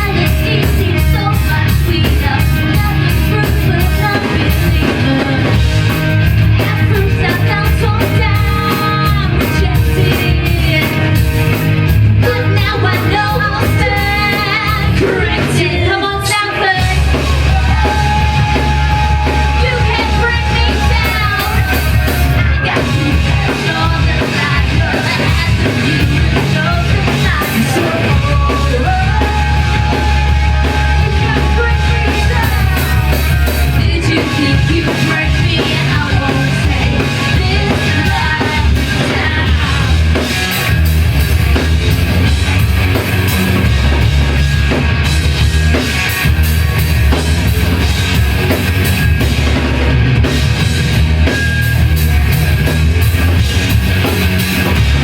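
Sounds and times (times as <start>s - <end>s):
live rock band playing: 0.0s - 55.0s
person singing: 12.2s - 40.0s.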